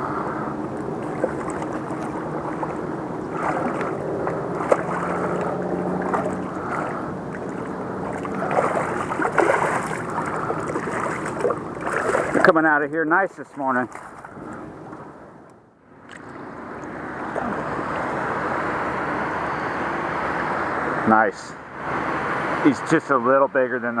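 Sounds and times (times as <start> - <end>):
moving water: 0.0 - 20.2
low motor rumble: 0.0 - 24.0
knocks and splashes: 0.8 - 12.7, 13.8 - 14.4.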